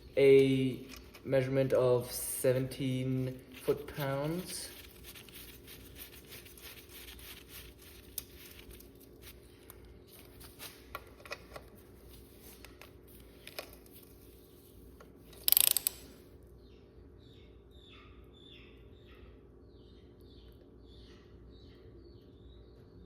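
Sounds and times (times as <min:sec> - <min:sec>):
ratchet wrench clicking: 0:15.4 - 0:16.1.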